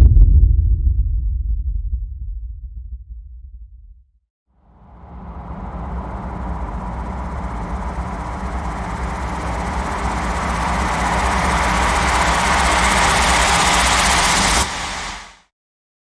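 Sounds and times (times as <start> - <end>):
low rumbling drone: 4.6 - 15.4.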